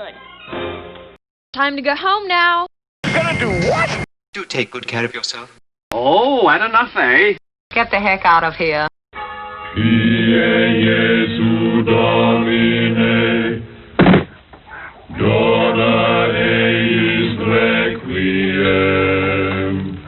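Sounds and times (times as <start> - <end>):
choir singing held chords: 9.7 - 14.0, 15.1 - 20.0.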